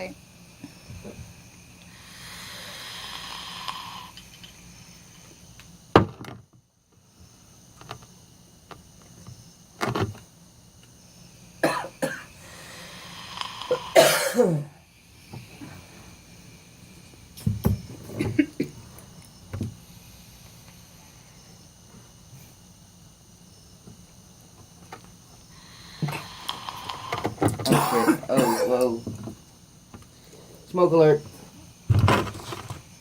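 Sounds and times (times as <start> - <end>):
soft breathy hiss: 0.0 - 5.5, 11.0 - 23.8, 25.4 - 29.1, 30.0 - 33.0
man coughing: 11.6 - 12.3, 13.7 - 14.8, 27.6 - 29.0.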